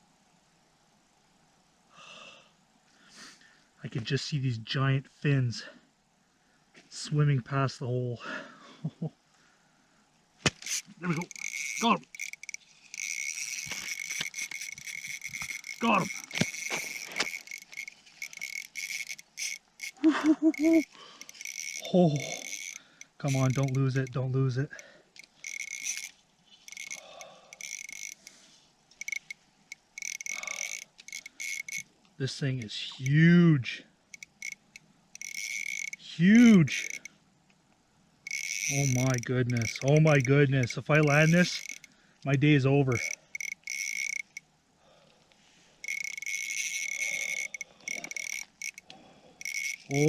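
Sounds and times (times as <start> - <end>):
fishing reel drag buzzing: 10.5 - 31.9, 34.1 - 37.2, 38.2 - 42.0, 42.8 - 45.0, 45.7 - 50.0.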